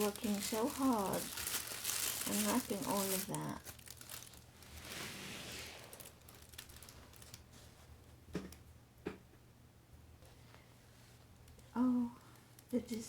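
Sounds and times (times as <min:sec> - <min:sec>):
wrapping paper rustling: 0:00.0 - 0:07.9.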